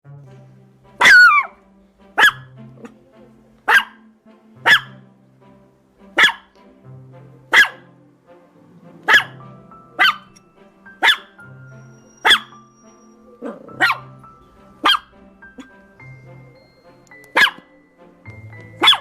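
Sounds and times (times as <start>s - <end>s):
gentle background music: 0.0s - 19.0s
dog barking: 1.0s - 1.6s, 2.2s - 3.0s, 3.7s - 4.0s, 4.6s - 5.0s, 6.2s - 6.5s, 7.5s - 7.9s, 9.0s - 9.4s, 10.0s - 10.4s, 11.0s - 11.4s, 12.2s - 12.6s, 13.4s - 14.2s, 14.8s - 15.7s, 17.3s - 17.7s, 18.8s - 19.0s.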